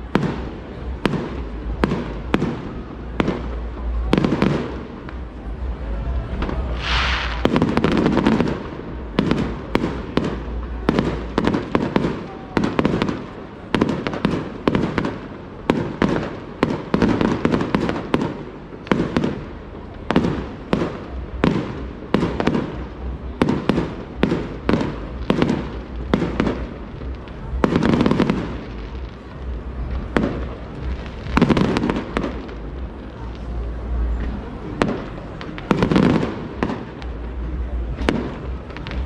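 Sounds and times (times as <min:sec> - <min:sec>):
fireworks bangs: 0:00.0 - 0:39.0
firework hissing streak: 0:06.5 - 0:10.6.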